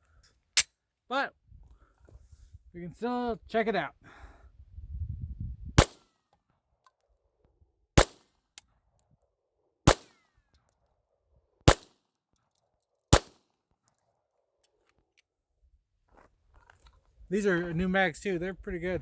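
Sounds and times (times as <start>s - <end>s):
pistol shots: 5.8s - 6.0s, 8.0s - 8.2s, 9.9s - 10.1s, 11.7s - 11.9s, 13.1s - 13.4s.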